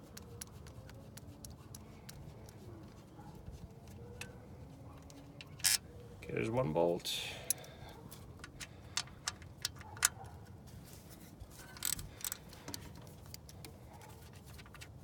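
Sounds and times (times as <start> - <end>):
wrench clicking on bolt: 5.4 - 5.8, 11.7 - 13.5.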